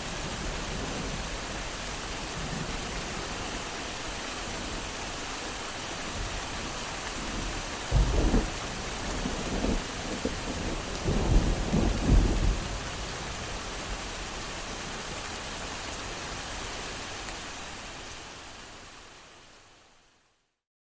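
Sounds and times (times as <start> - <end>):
steady rain falling: 0.0 - 20.5
thunder rumbling: 7.4 - 13.2.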